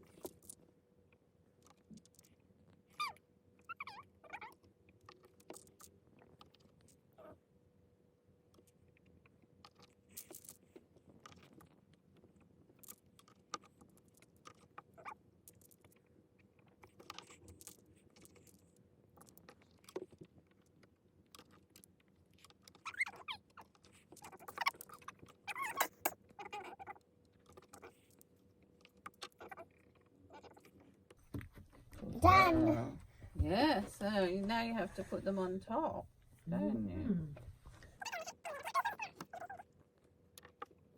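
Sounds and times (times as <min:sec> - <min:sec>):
small objects clicking and rattling: 0:00.0 - 0:00.6, 0:09.6 - 0:11.8, 0:16.7 - 0:20.7, 0:21.3 - 0:26.8
faint steady hum: 0:30.8 - 0:38.0
soft voice-like sounds: 0:31.9 - 0:33.7.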